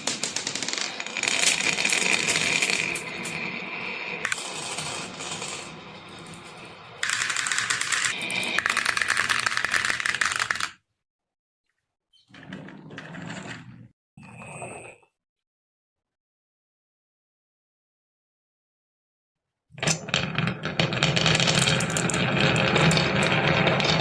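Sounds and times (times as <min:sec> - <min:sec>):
marbles clattering down a marble run: 0:00.0 - 0:03.6, 0:04.2 - 0:10.8, 0:19.8 - 0:24.0.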